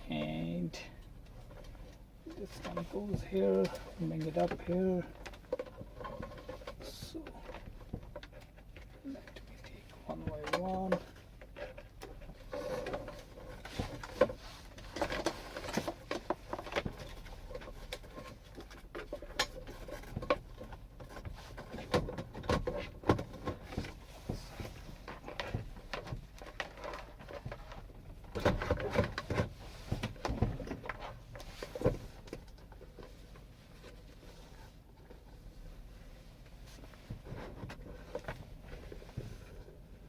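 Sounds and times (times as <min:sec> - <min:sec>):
dashboard parts clicking and knocking: 0:01.0 - 0:33.2.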